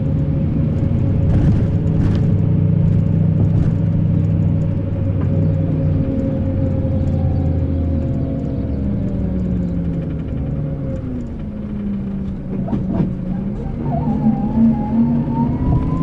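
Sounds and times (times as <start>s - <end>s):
diesel engine running: 0.0s - 16.0s
clatter of sharp knocks: 0.8s - 5.4s.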